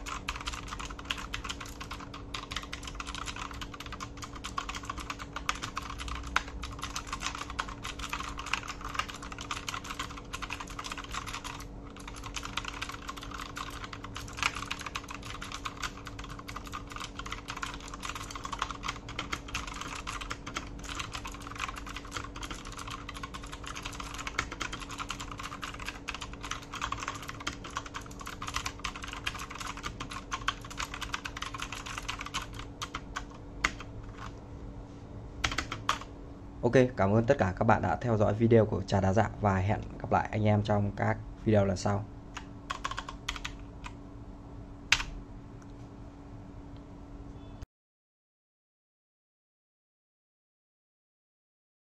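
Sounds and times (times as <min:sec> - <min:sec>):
typing on mechanical keyboard: 0:00.0 - 0:34.3, 0:35.4 - 0:36.1, 0:42.4 - 0:43.6.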